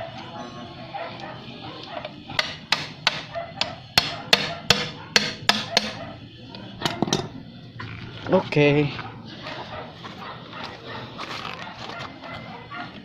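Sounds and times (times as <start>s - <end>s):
hammer striking metal: 2.3s - 6.0s.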